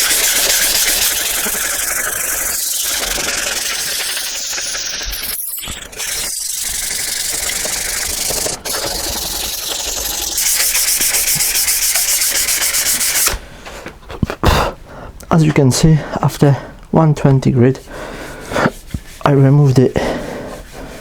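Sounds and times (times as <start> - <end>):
abrasive rasping on metal: 0.0 - 13.2.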